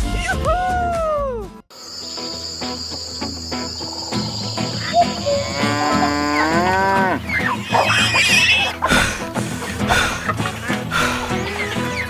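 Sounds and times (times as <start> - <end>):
cow mooing: 5.1 - 9.2.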